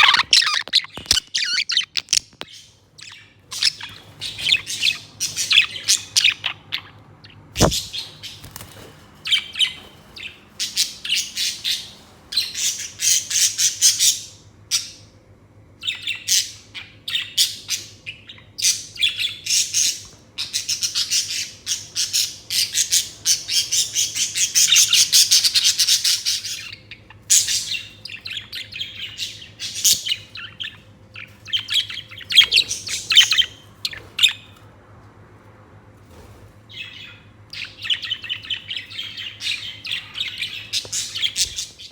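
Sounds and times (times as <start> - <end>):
budgerigar chirping and chattering: 0.0 - 8.4, 15.9 - 34.5
faint low hum: 0.0 - 41.9
sharp knock: 7.6 - 7.9.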